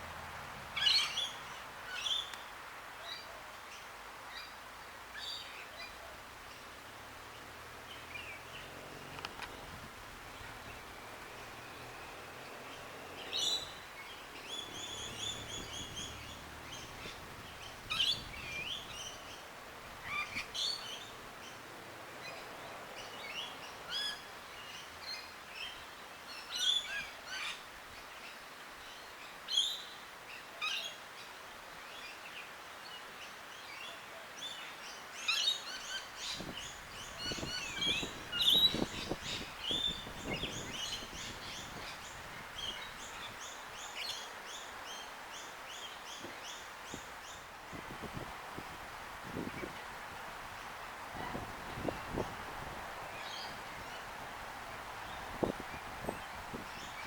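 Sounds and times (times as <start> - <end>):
faint background hiss: 0.0 - 57.0
small birds chirping: 5.2 - 30.0, 32.0 - 48.3, 49.2 - 57.0.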